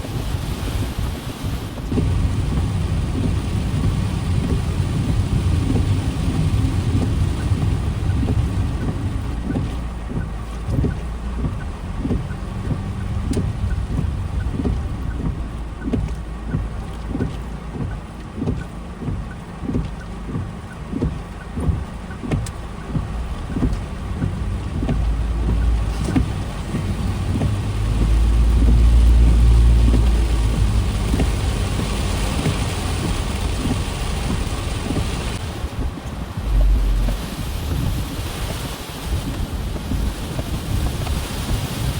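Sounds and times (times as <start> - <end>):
wind buffeting microphone: 0.0 - 18.0, 19.8 - 41.9
quick repeated thumps: 1.9 - 38.6
rushing hiss: 25.3 - 41.9.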